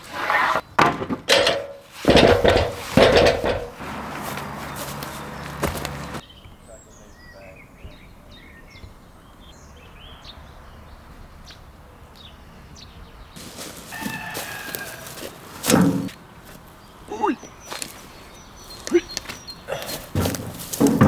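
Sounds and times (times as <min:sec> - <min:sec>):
small birds chirping: 0:03.9 - 0:20.8
rooster crowing: 0:13.6 - 0:15.7.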